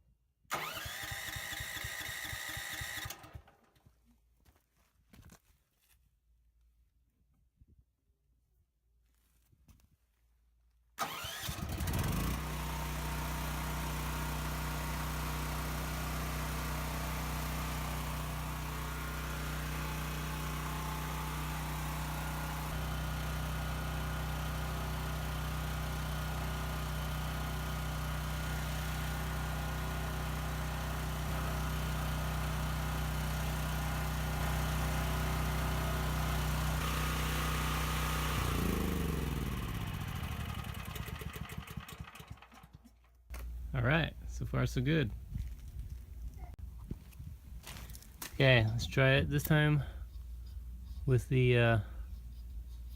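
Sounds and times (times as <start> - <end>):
generator engine running: 0.5 - 3.6, 11.0 - 45.5
electric starter: 0.5 - 3.7, 11.0 - 43.7.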